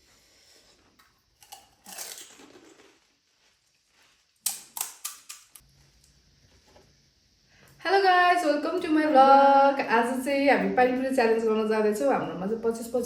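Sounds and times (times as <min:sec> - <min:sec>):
crisp shells cracking and crunching: 0:01.4 - 0:03.2.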